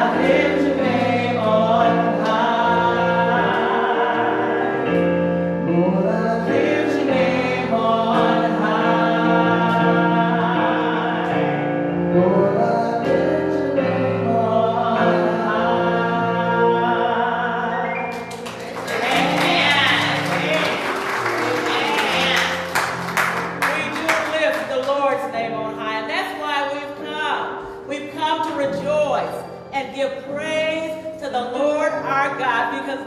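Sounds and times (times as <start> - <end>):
gospel song with instruments: 0.0 - 33.0
people clapping: 18.1 - 25.1.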